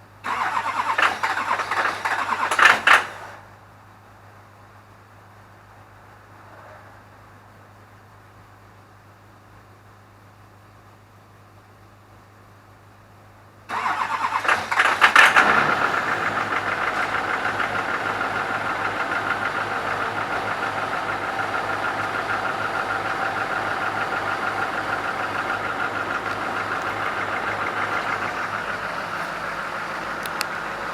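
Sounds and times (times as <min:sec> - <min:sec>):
diesel engine idling: 0:00.0 - 0:06.2, 0:13.7 - 0:30.9
diesel engine cranking: 0:00.2 - 0:03.5, 0:13.7 - 0:30.9.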